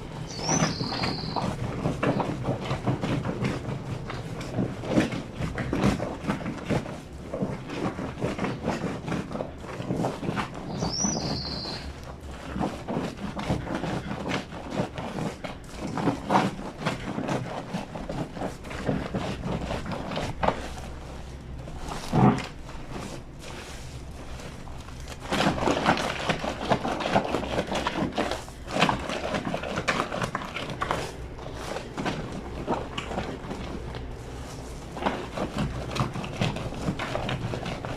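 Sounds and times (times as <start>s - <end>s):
wet blanket scrubbed by hand: 0.0s - 37.9s.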